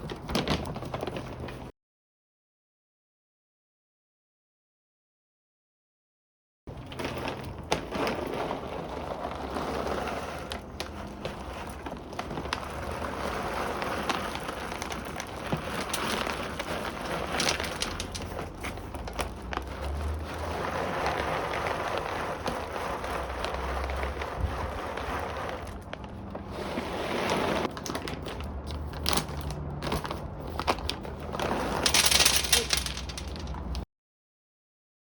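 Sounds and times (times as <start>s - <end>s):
dog kibble crunching and rattling: 6.8s - 26.4s, 27.7s - 33.8s.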